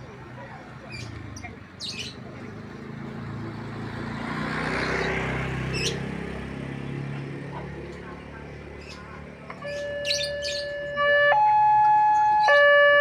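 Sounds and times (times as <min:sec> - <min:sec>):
vehicle driving past: 0:00.9 - 0:11.0.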